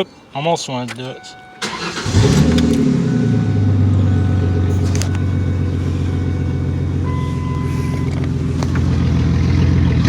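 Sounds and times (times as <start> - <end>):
brief steady beep: 1.2 - 1.7, 2.9 - 8.3
car engine idling: 1.6 - 10.0.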